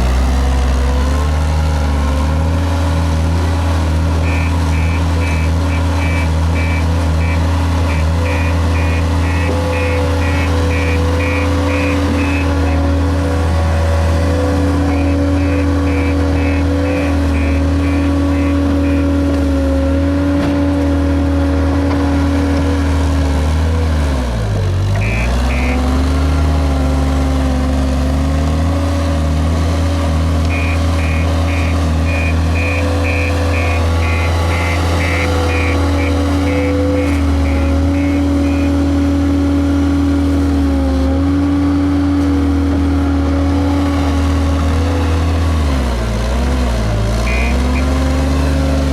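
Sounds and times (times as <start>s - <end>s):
diesel engine at high revs: 0.0s - 48.9s
reversing alarm beeping: 4.2s - 13.0s, 14.8s - 19.2s, 25.0s - 25.9s, 30.5s - 38.9s, 47.2s - 48.0s.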